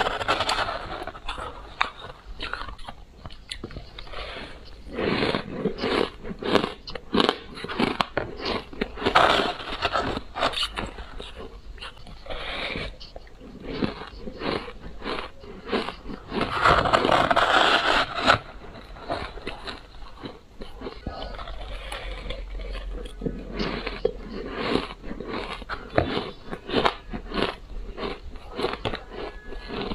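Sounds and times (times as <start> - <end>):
ice being chewed: 0.0 - 29.9.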